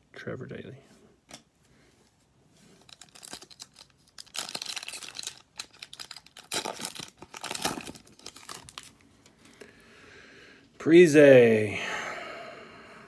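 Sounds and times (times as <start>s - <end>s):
foil wrapper tearing and crinkling: 2.8s - 9.0s.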